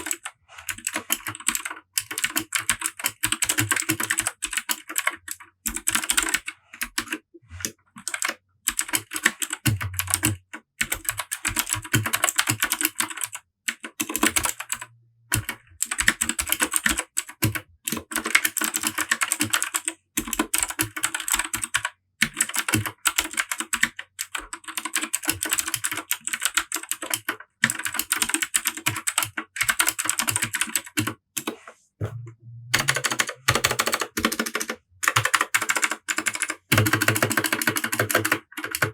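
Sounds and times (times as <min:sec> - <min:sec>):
fast typing on clicky keyboard: 0:00.0 - 0:07.2, 0:08.0 - 0:31.6, 0:32.8 - 0:38.9.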